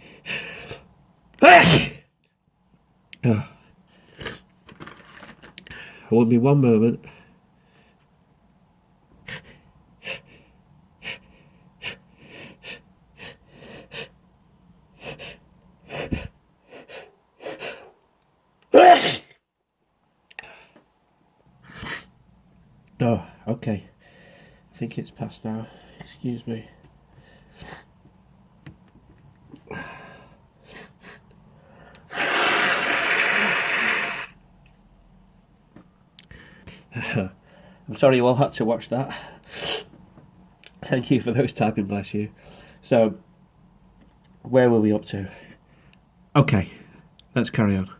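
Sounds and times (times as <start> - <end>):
quiet breathing noises: 0.0 - 1.0, 3.3 - 4.6, 5.6 - 6.2, 6.9 - 8.2, 9.2 - 18.0, 20.3 - 22.2, 23.1 - 28.5, 29.4 - 32.4, 36.2 - 38.0, 38.8 - 40.2, 42.2 - 43.0, 45.1 - 47.2
man blowing his nose: 1.4 - 2.0, 18.8 - 19.4, 32.1 - 34.4
person gasping in-breaths: 29.6 - 30.9.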